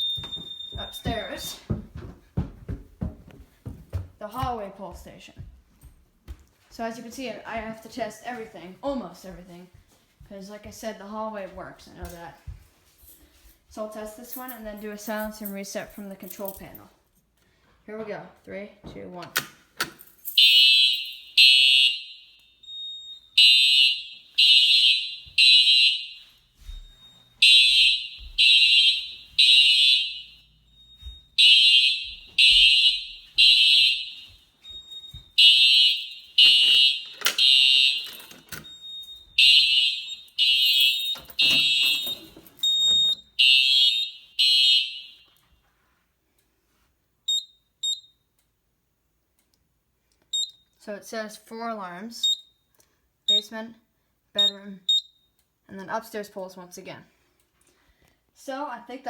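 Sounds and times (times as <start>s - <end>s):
fire alarm horn: 0.0s - 1.3s, 20.4s - 45.6s.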